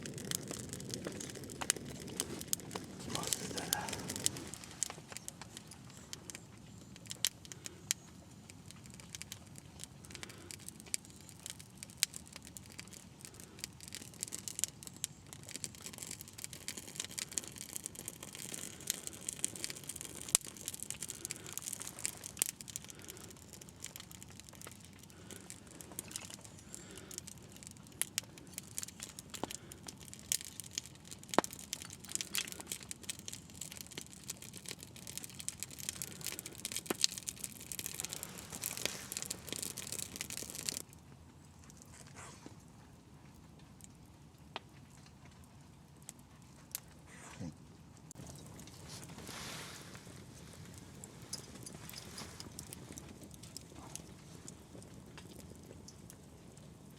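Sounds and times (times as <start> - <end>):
campfire crackling and popping: 0.0 - 56.9
faint steady hiss: 48.2 - 54.5.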